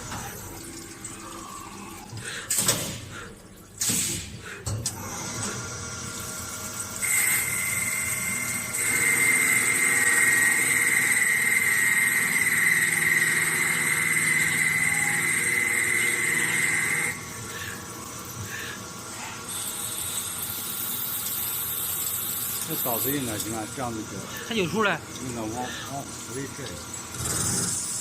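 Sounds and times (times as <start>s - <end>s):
lathe motor whine: 7.0s - 17.3s.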